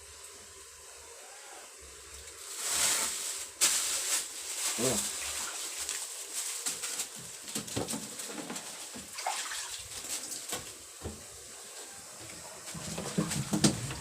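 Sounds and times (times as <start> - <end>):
water sloshing and splashing: 5.1 - 10.8.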